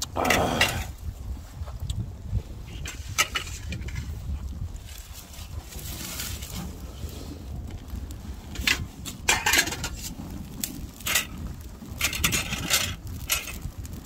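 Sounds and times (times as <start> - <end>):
wind rumble on microphone: 0.0 - 14.0
utensil scraping metal pot: 2.7 - 4.2, 8.4 - 10.2, 12.0 - 13.7.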